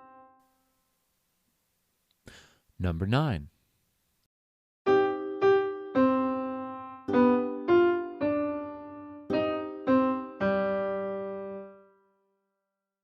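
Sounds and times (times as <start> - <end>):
keyboard melody: 0.0 - 0.6, 4.9 - 12.1.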